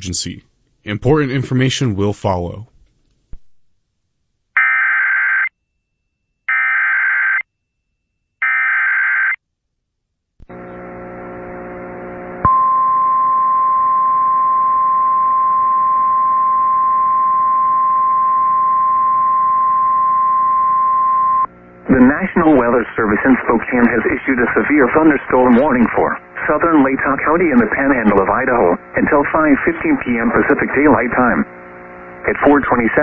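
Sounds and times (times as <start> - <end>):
faint hum: 10.4 - 33.0.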